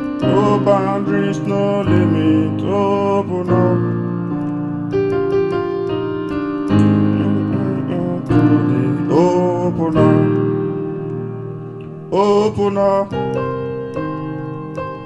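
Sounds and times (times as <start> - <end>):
man singing: 0.0 - 4.4, 6.7 - 10.8, 11.8 - 13.7
keyboard playing gospel chords: 0.0 - 15.0.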